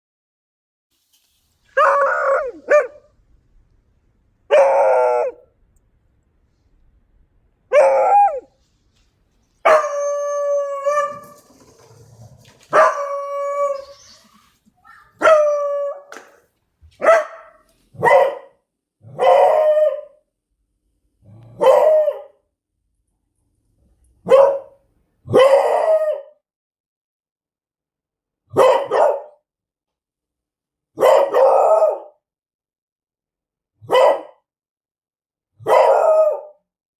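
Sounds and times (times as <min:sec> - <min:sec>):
dog barking: 0:01.7 - 0:03.1, 0:04.5 - 0:05.5, 0:07.7 - 0:08.5, 0:09.6 - 0:10.1, 0:10.8 - 0:11.7, 0:12.7 - 0:14.2, 0:14.8 - 0:16.3, 0:17.0 - 0:20.2, 0:21.6 - 0:22.4, 0:24.2 - 0:26.4, 0:28.5 - 0:29.4, 0:31.0 - 0:32.2, 0:33.8 - 0:34.5, 0:35.6 - 0:36.6
dog howling: 0:01.8 - 0:03.1, 0:04.5 - 0:05.5, 0:07.7 - 0:08.6, 0:09.6 - 0:11.8, 0:12.7 - 0:16.2, 0:19.2 - 0:20.2, 0:21.6 - 0:22.4, 0:35.7 - 0:36.5.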